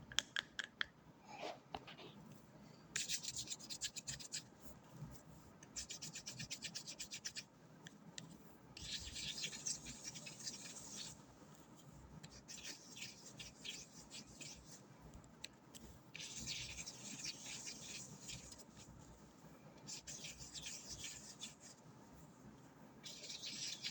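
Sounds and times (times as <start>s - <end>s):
crisp scratching and rubbing: 8.8s - 14.9s.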